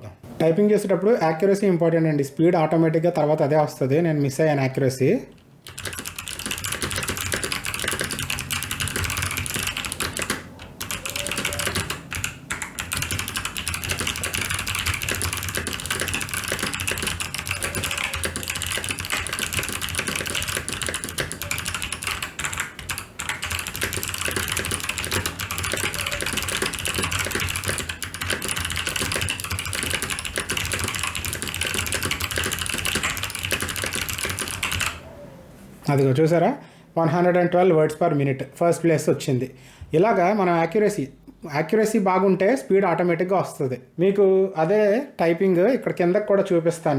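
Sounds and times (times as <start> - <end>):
fast typing on clicky keyboard: 5.6 - 35.0.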